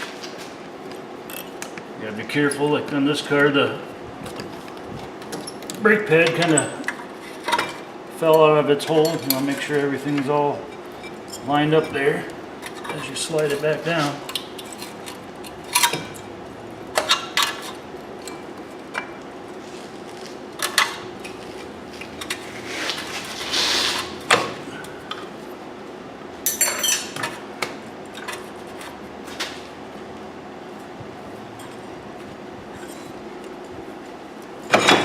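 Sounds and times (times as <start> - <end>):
metal tools clinking: 8.8 - 10.3, 26.4 - 27.3.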